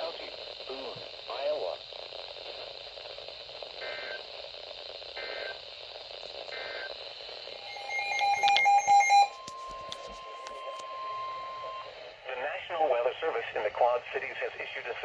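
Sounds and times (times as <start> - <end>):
radio hiss: 0.0 - 15.0
digital data bursts: 3.6 - 12.5
steady single-pitched tone: 7.5 - 12.2
electronic alert beeping: 7.6 - 12.0.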